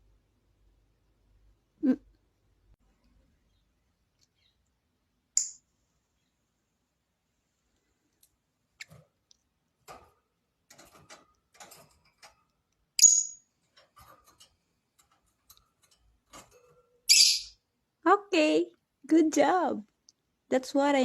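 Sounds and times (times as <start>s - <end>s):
bird chirping: 3.4s - 4.8s, 13.0s - 13.6s, 17.0s - 17.7s
bird shrill call: 17.1s - 17.6s.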